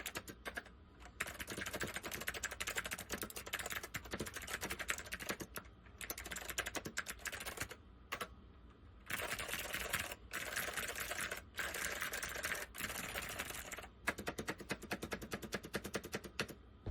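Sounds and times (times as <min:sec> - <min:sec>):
keyboard typing: 0:00.0 - 0:08.3, 0:09.1 - 0:16.9.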